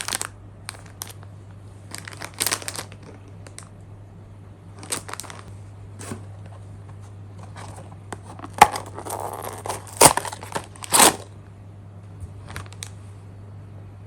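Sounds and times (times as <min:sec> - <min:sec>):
plastic packaging crinkling and tearing: 0:00.0 - 0:01.2, 0:01.9 - 0:03.7, 0:04.8 - 0:05.5, 0:07.4 - 0:11.3, 0:12.4 - 0:12.9.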